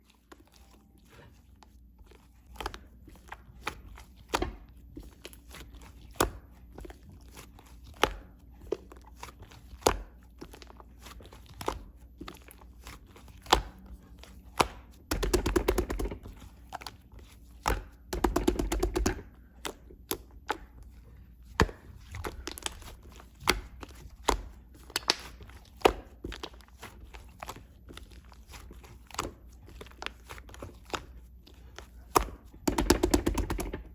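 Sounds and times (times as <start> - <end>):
slime squishing: 0.0 - 33.9.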